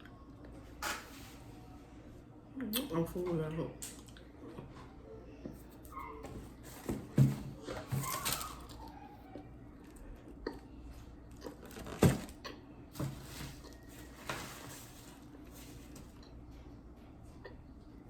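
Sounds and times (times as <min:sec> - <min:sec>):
person chewing food: 0:09.9 - 0:12.6.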